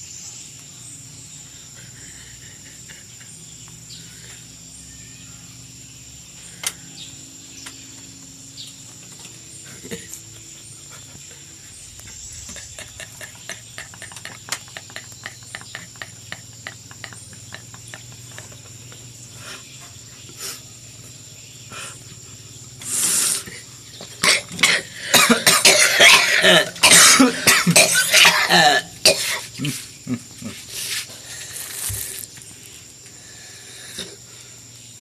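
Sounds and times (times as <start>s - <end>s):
person coughing: 24.2s - 29.8s.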